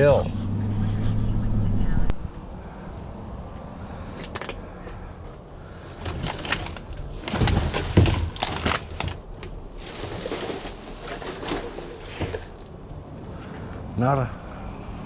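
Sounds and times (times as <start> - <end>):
rustling and clattering trash: 5.6 - 13.0
dull knocks: 5.9 - 12.7.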